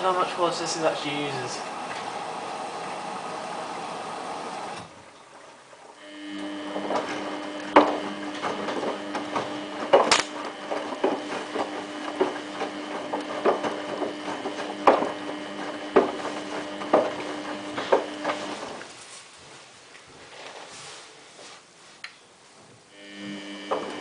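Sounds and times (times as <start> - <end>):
washing machine motor whine: 0.0 - 19.0, 22.9 - 24.0.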